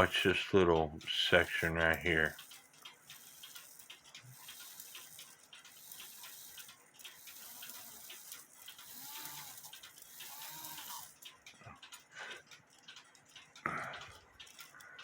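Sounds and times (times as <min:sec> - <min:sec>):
steady hiss: 0:00.0 - 0:11.1
cuckoo clock mechanism clicking: 0:00.0 - 0:15.0.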